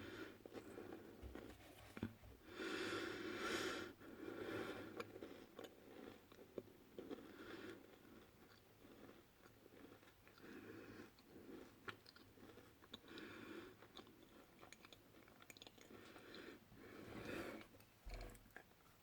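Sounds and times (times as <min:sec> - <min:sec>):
person chewing crunchy biscuits: 0:04.1 - 0:17.0.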